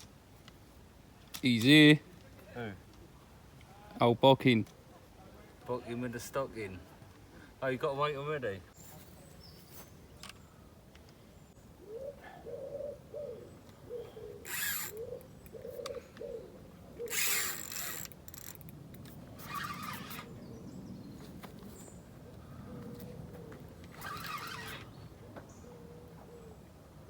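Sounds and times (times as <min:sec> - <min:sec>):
pigeon cooing: 0:11.8 - 0:17.4, 0:25.5 - 0:26.6.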